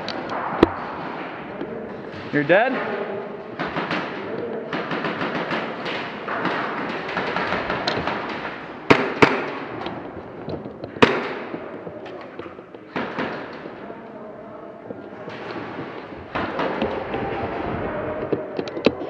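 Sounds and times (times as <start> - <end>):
airsoft guns firing: 0.2 - 10.2, 10.9 - 12.0, 12.9 - 13.9.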